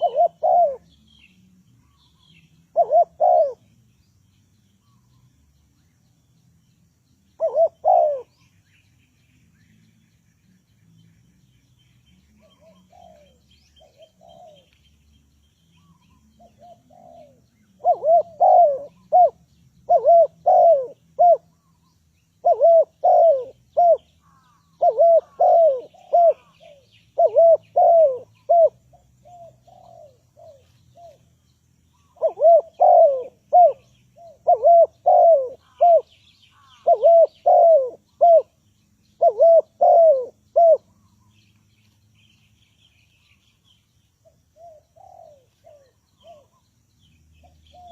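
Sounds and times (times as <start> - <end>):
doves cooing: 0.0 - 1.0, 1.8 - 3.7, 7.4 - 8.3, 12.3 - 14.7, 15.8 - 21.8, 22.4 - 31.3, 32.0 - 38.6, 39.2 - 41.2, 44.6 - 46.6.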